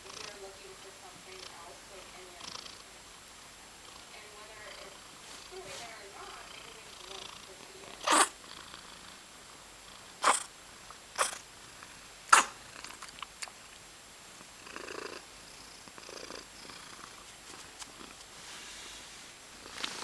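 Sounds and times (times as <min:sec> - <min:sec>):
cat purring: 0:00.0 - 0:13.8, 0:14.4 - 0:20.0
cat sneezing: 0:08.0 - 0:08.4, 0:10.2 - 0:10.5, 0:11.2 - 0:11.4, 0:12.3 - 0:12.6.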